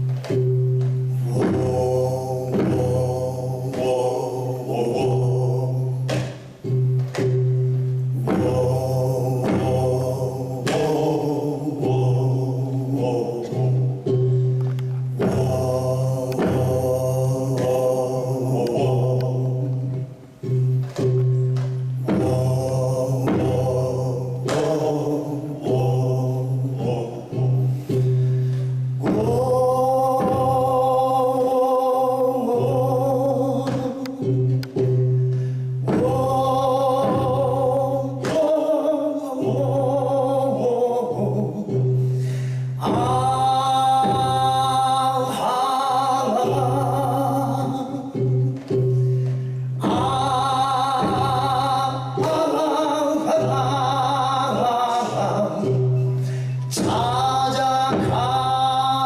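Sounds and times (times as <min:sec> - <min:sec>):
instrumental accompaniment: 0:00.0 - 0:59.0
man singing with vibrato: 0:00.0 - 0:59.0.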